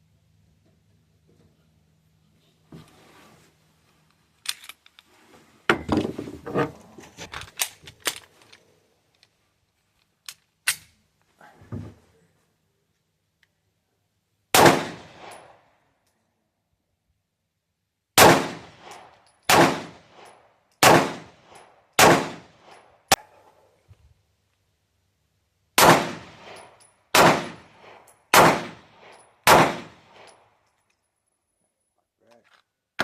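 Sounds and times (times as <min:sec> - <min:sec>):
gunshots: 0:14.6 - 0:15.6, 0:18.2 - 0:20.2, 0:20.8 - 0:22.7, 0:25.8 - 0:30.3.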